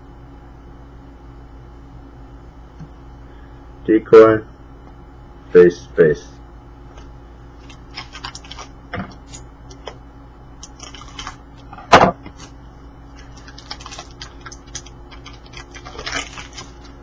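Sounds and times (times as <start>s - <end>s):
trading cards clicking and rustling: 7.6s - 10.0s, 10.6s - 11.7s, 13.2s - 17.0s.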